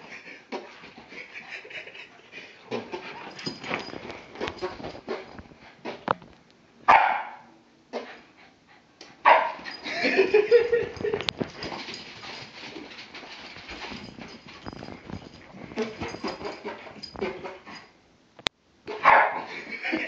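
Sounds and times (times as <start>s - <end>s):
rough noise with small clicks: 10.8s - 17.4s.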